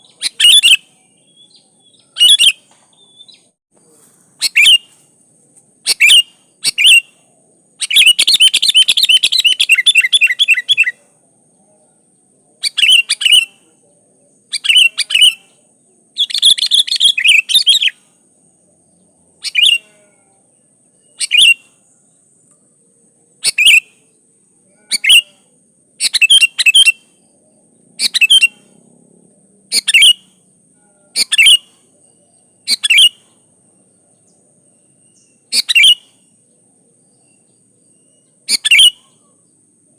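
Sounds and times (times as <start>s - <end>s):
bird rapid chattering: 4.4s - 5.0s, 5.8s - 7.1s, 7.8s - 10.9s, 31.2s - 31.6s, 35.5s - 36.0s, 38.4s - 39.1s.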